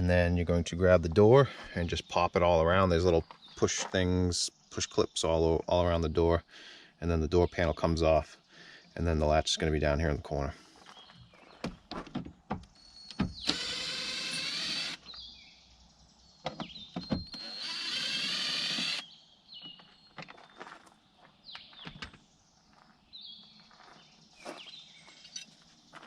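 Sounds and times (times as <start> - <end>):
power driver motor spinning: 13.3 - 15.1, 17.3 - 19.0.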